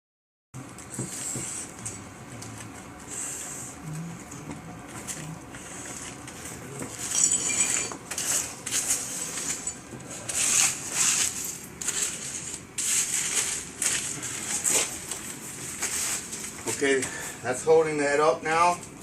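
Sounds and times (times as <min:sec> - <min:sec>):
metal tool scraping brick: 0:06.8 - 0:13.4.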